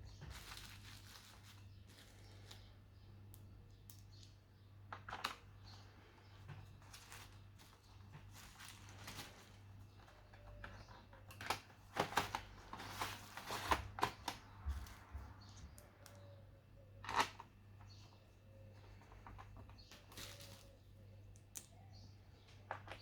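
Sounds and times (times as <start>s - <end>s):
plastic clicks and scrapes: 17.0s - 18.0s.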